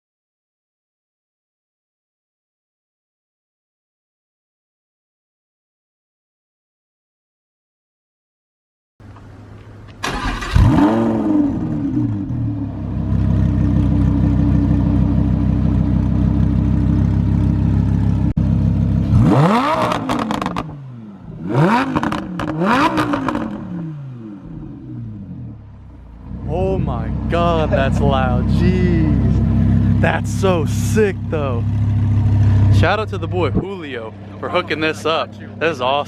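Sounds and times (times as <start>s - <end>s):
sports car engine revving: 9.0s - 36.0s.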